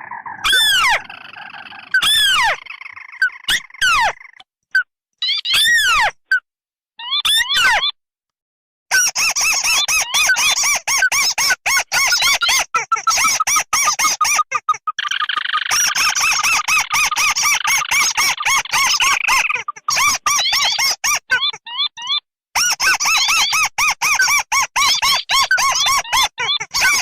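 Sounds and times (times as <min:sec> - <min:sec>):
crake calls: 0:00.0 - 0:04.4, 0:12.0 - 0:21.5
high chattering: 0:11.9 - 0:21.5.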